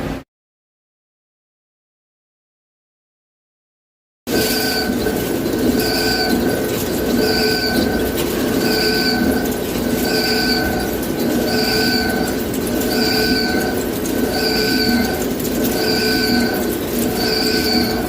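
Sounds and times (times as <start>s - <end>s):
constant high tone: 4.3s - 18.0s
cycling high whine: 4.3s - 18.0s
lathe machine noise: 4.3s - 18.0s.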